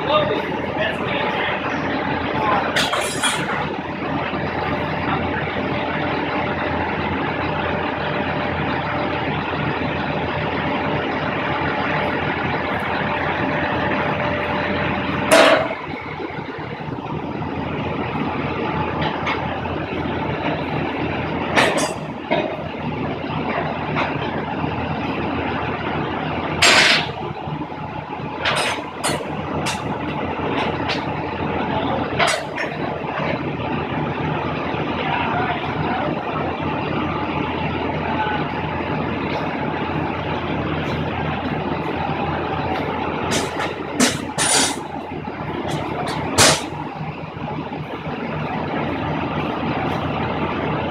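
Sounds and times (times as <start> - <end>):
vehicle engine running: 0.0 - 50.9.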